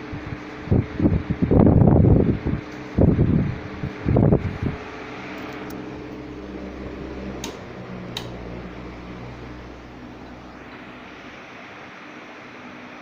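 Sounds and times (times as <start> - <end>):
fan motor hum: 0.0 - 13.0
sharp clicks: 7.4 - 8.4.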